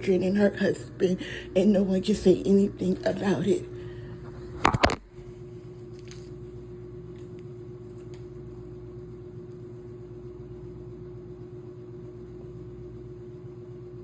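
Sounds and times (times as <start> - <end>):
steady mid-low hum: 0.0 - 14.0.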